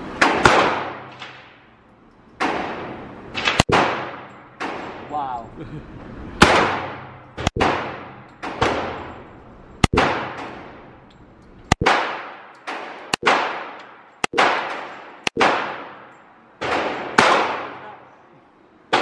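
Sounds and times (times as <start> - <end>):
handgun shots with echo: 0.2 - 1.6, 6.4 - 9.1, 9.8 - 10.7, 11.7 - 17.8.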